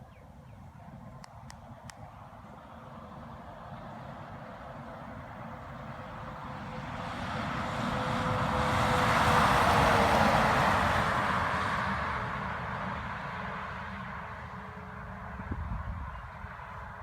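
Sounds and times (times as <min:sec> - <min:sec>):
truck driving past: 0:03.5 - 0:17.0.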